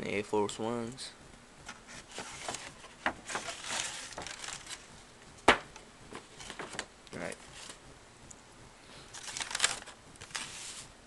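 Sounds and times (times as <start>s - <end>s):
packaging rustling: 1.7s - 4.9s, 5.5s - 7.8s, 9.1s - 10.9s.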